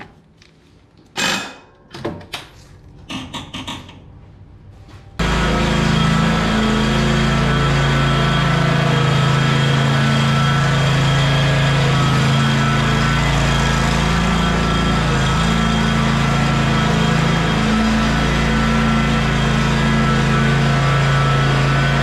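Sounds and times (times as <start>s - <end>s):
lawn mower engine running: 5.2s - 22.0s.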